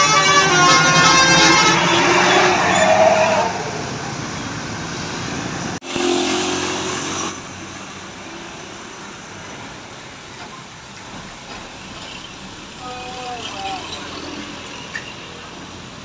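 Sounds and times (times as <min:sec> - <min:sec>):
vehicles passing on road: 0:00.0 - 0:16.0.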